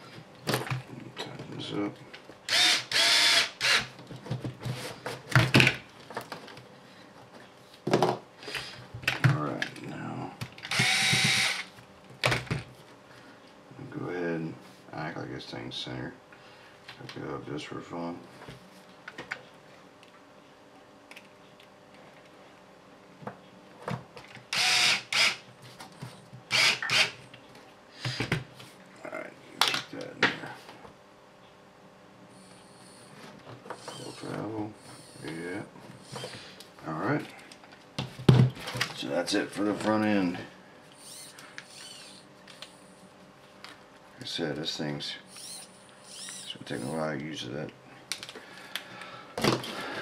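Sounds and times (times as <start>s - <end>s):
parts knocking and clattering on workbench: 7.8s - 8.2s
steering servo buzzing: 10.7s - 11.7s, 33.8s - 35.3s, 41.0s - 42.8s, 45.3s - 47.0s.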